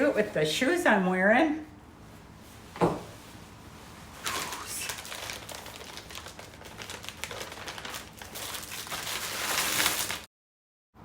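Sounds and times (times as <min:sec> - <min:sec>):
packaging crinkling and rustling: 0:04.2 - 0:10.3.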